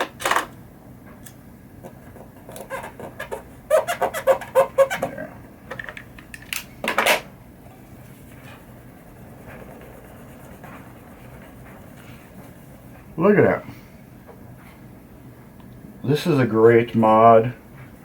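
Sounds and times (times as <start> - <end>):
fingertip squeaking on plastic: 2.4 - 5.2.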